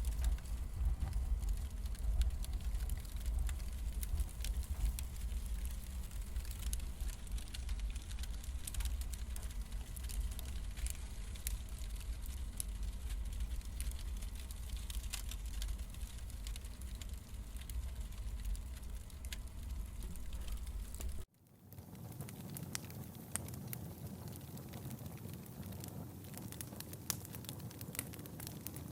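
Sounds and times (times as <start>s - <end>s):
low rumble: 0.0s - 21.3s
firewood crackling: 0.0s - 28.9s.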